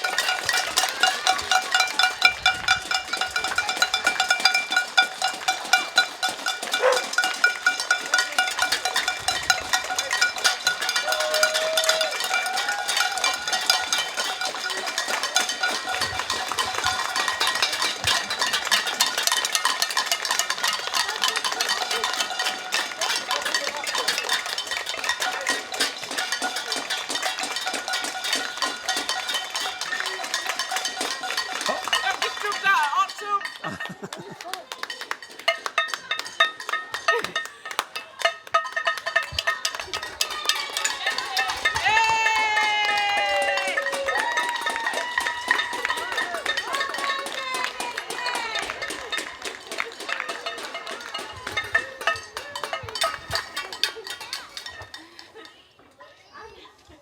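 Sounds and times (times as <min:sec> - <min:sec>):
people clapping: 0:00.0 - 0:55.4
ringing bells or pans: 0:00.0 - 0:55.9.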